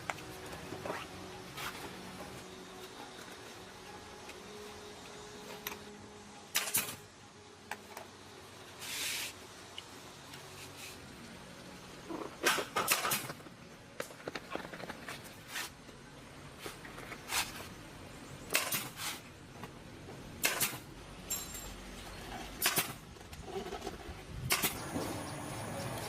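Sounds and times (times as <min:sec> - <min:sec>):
short hiss: 0:08.8 - 0:09.4.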